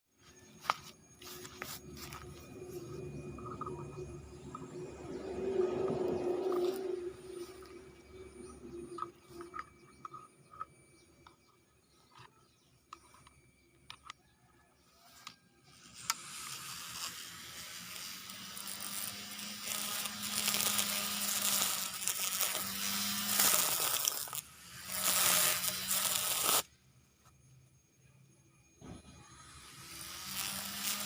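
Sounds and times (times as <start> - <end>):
grass cutter motor humming: 1.2 - 11.1, 15.0 - 26.7, 29.4 - 31.0
grass tearing and rustling: 16.8 - 26.6.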